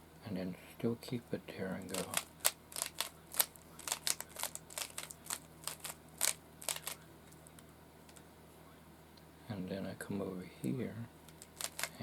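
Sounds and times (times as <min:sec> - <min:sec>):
puzzle cube clicking: 0:01.9 - 0:07.0, 0:11.3 - 0:11.9.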